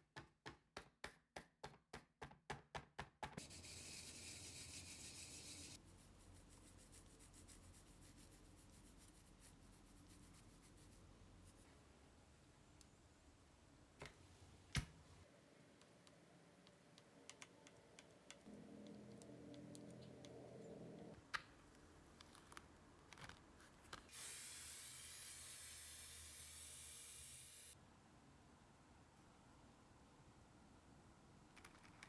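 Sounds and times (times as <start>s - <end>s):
low steady hum: 3.4s - 22.9s
steady hiss: 24.1s - 27.8s.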